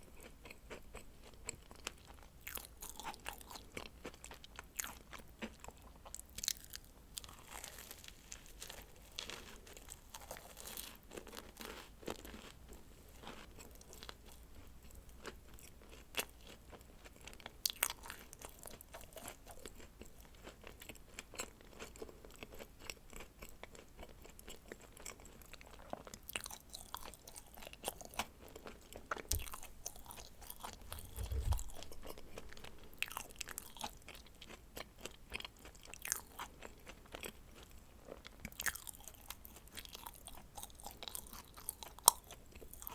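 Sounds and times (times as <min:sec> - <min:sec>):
soft chewing: 0:00.0 - 0:42.9
crisp crunching while chewing: 0:00.1 - 0:42.9
low bump: 0:30.8 - 0:32.6.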